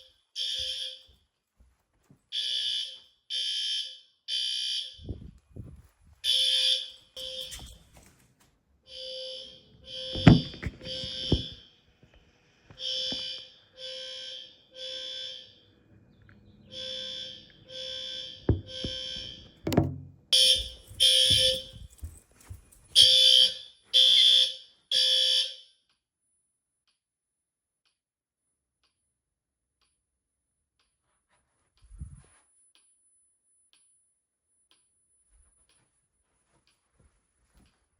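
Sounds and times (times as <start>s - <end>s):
fire alarm pulsed tone: 0.0s - 1.2s, 2.3s - 5.4s, 6.2s - 8.0s, 8.8s - 12.0s, 12.7s - 15.9s, 16.5s - 26.4s
sharp knocks: 10.2s - 11.5s, 18.5s - 21.6s.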